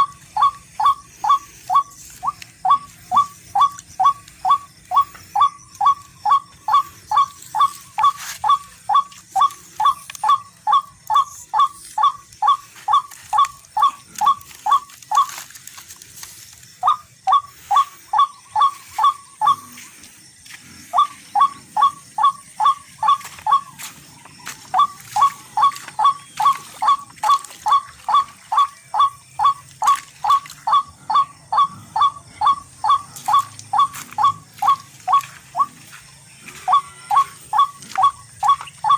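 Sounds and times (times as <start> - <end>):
bird calling short repeated notes: 0.0 - 15.4, 16.8 - 19.8, 20.9 - 35.8, 36.5 - 38.9.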